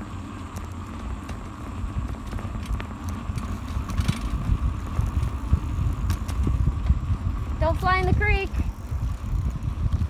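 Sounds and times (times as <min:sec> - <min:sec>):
bike knocks and rattles: 0:00.0 - 0:10.0
road vibration rumble: 0:00.0 - 0:10.0
wind on microphone: 0:03.3 - 0:10.0.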